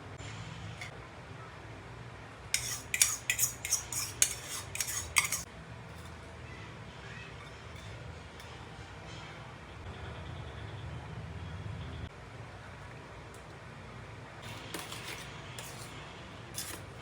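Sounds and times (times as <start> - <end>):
metal utensils clinking on dishes: 2.6 - 6.2, 16.6 - 17.0.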